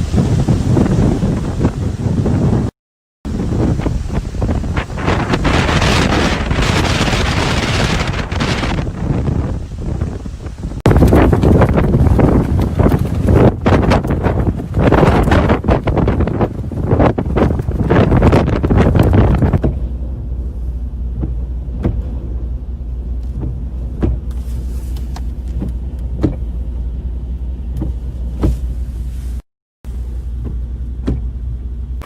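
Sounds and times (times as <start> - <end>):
wind buffeting microphone: 0.0 - 2.7, 3.3 - 29.4
steady low rumble: 3.3 - 32.0.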